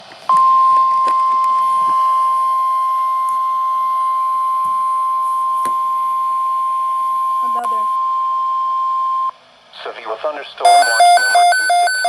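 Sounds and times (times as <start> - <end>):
radio hiss with crackles: 9.7 - 10.7
steady alert tone: 10.7 - 12.0.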